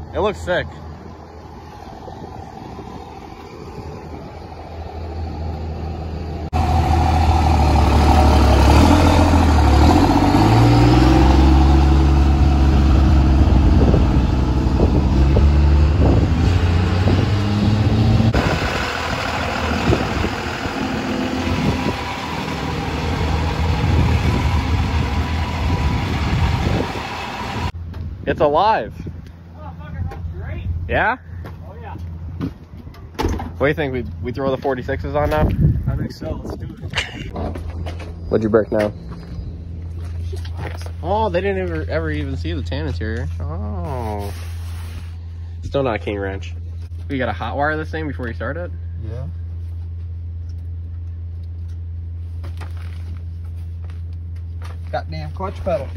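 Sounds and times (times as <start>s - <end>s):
truck engine revving: 2.4s - 27.8s.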